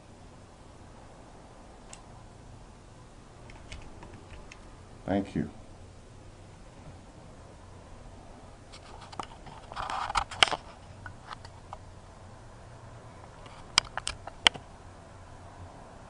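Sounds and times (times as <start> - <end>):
sharp clicks: 1.8 - 2.1, 3.4 - 4.7, 13.2 - 14.7.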